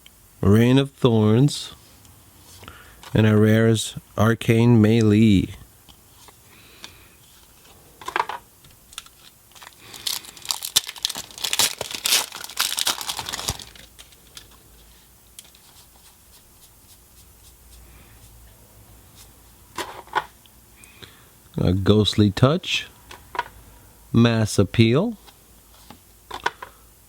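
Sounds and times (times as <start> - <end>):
foil wrapper tearing and crinkling: 8.9 - 14.6.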